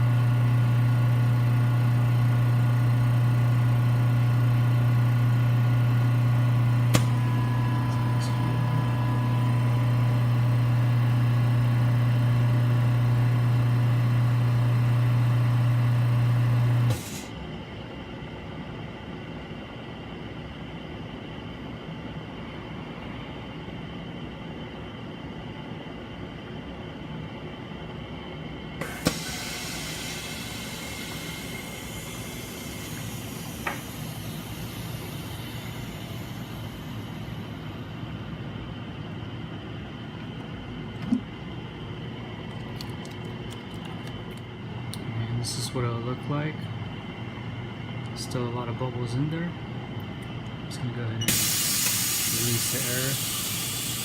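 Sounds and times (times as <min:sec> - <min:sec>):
laminating press humming: 0:00.0 - 0:17.8, 0:28.5 - 0:54.0
air hissing: 0:06.8 - 0:10.4, 0:28.8 - 0:37.6, 0:51.3 - 0:54.0.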